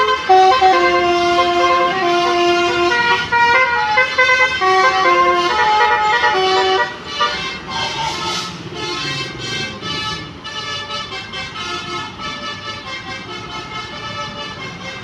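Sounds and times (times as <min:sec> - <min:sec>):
musical bus horn playing a tune: 0:00.0 - 0:15.0.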